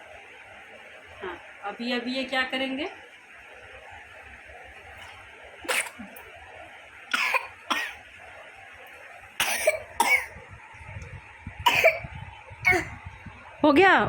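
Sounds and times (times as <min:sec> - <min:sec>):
toddler coughing: 0:05.7 - 0:06.2, 0:07.1 - 0:08.0, 0:09.4 - 0:10.4, 0:11.7 - 0:12.1, 0:12.7 - 0:13.0.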